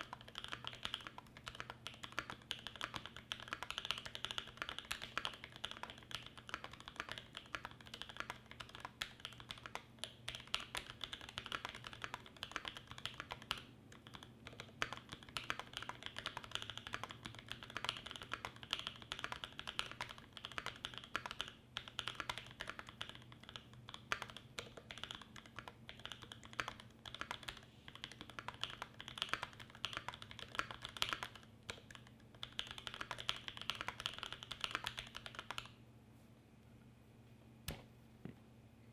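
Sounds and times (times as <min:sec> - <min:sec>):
mechanical keyboard typing: 0:00.0 - 0:35.7.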